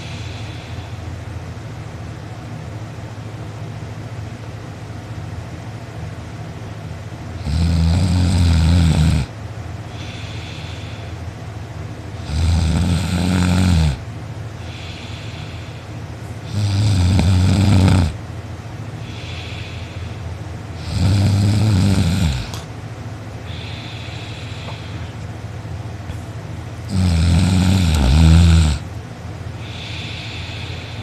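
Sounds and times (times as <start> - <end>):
person snoring: 0.0 - 1.0, 7.4 - 9.3, 12.2 - 14.0, 16.5 - 18.2, 20.8 - 22.7, 26.9 - 28.9
soft breathing: 0.0 - 1.2, 9.8 - 11.4, 14.6 - 16.4, 18.9 - 20.9, 23.4 - 25.4, 29.5 - 31.0.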